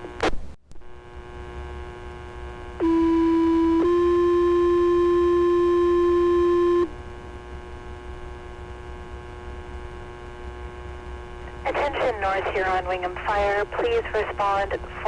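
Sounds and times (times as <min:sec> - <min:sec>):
radio channel hum and hiss: 0:00.0 - 0:04.2, 0:08.2 - 0:15.0.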